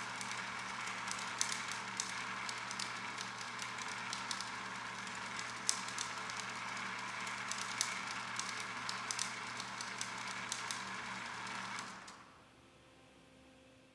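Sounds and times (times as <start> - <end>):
pages flicking rapidly: 0.0 - 12.2
motor hum: 0.0 - 12.5.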